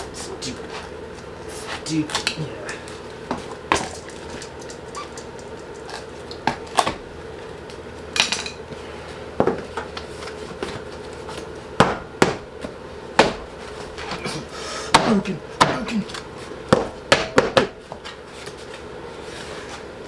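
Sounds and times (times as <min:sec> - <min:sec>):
faint steady hum: 0:00.0 - 0:20.0
knocks and clicks of hand work: 0:11.8 - 0:14.2, 0:16.7 - 0:18.1.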